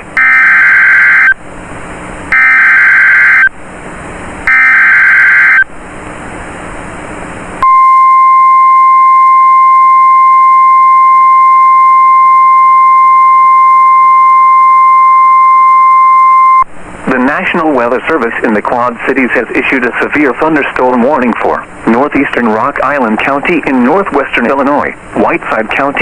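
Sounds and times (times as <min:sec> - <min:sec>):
steady single-pitched alarm tone: 0:00.0 - 0:01.4, 0:02.3 - 0:03.5, 0:04.5 - 0:05.7, 0:07.6 - 0:16.7
buzzing digital data bursts: 0:02.3 - 0:03.5, 0:04.5 - 0:05.6
radio hiss: 0:17.0 - 0:26.0.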